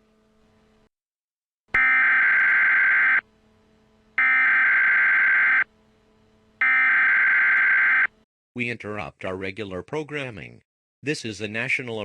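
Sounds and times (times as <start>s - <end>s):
digital data tone bursts: 1.8s - 3.2s, 4.2s - 5.6s.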